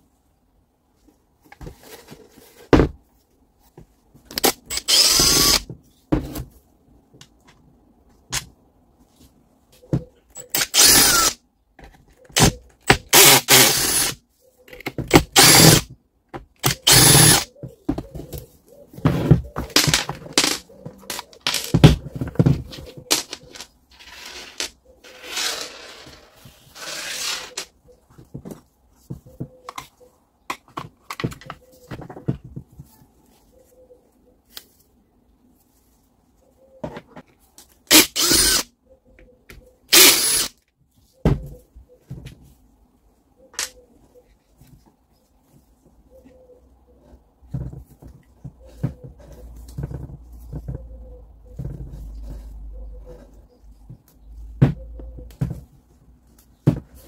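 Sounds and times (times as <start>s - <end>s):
power drill in short bursts: 4.7s - 5.6s, 16.8s - 17.4s, 37.9s - 38.6s, 39.9s - 40.5s
clicks and knocks of parts handled: 19.6s - 24.8s, 43.5s - 43.8s.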